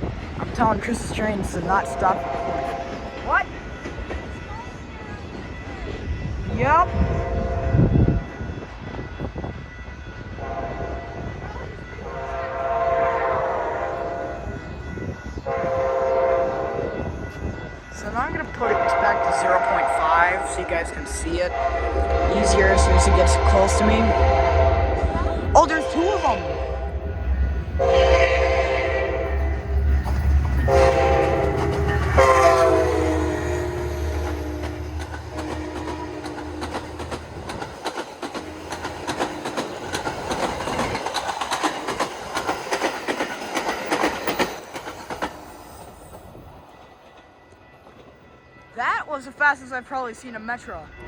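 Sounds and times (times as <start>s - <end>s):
train rumble: 0.0s - 51.0s
train horn blasts: 1.7s - 3.1s, 6.6s - 8.2s, 10.2s - 11.4s, 12.0s - 14.6s, 15.4s - 17.2s, 18.3s - 37.5s.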